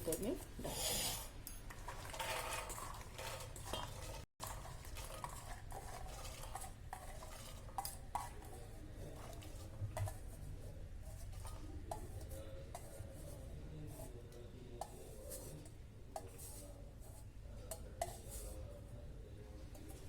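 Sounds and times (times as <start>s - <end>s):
utensils scraping a pressure cooker: 0.1s - 14.2s.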